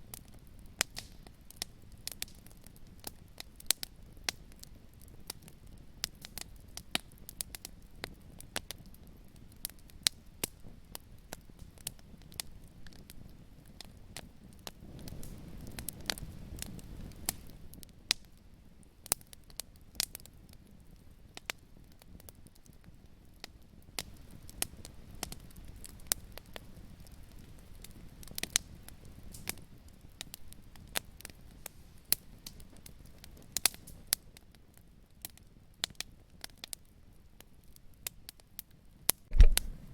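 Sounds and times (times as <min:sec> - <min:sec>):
fireplace fire crackling: 0:00.0 - 0:39.9
low rumble of flame: 0:00.0 - 0:39.9
sharp pops from fire: 0:00.1 - 0:08.8, 0:13.8 - 0:18.3, 0:24.0 - 0:34.0, 0:39.3 - 0:39.9.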